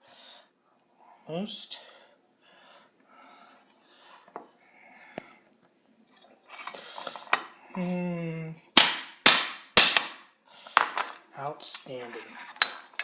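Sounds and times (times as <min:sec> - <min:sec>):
ceramic bowl clinking and scraping: 0:10.9 - 0:13.0.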